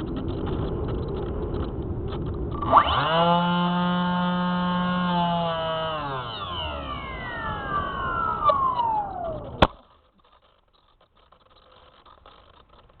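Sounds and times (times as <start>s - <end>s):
electric motor whine winding down: 2.3s - 10.0s.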